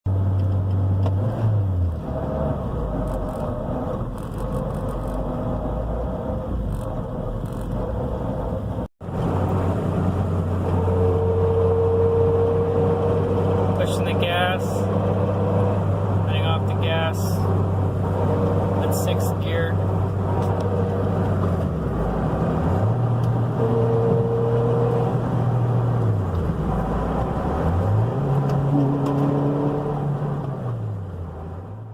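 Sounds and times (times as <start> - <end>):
car engine low note: 0.1 - 31.9.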